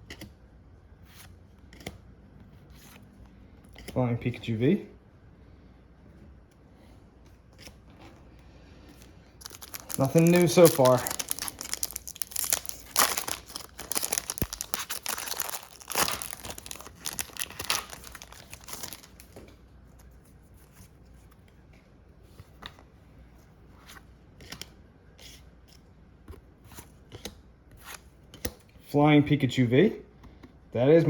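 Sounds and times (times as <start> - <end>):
foil pack tearing and crinkling: 9.4 - 19.4.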